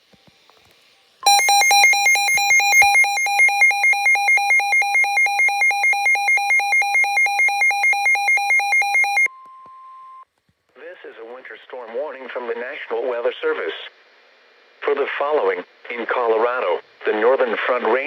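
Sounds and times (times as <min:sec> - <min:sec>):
electronic two-tone alarm warbling: 0:01.2 - 0:09.3.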